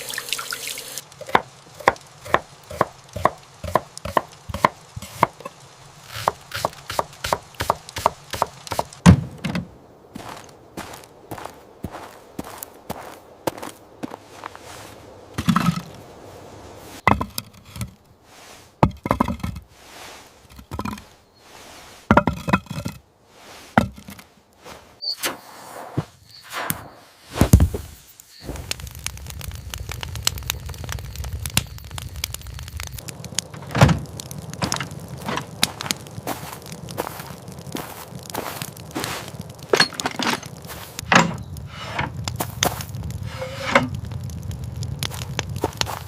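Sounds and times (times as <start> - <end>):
steady low rumble: 28.5 - 39.6
knocks thunks and cracks: 33.5 - 36.0.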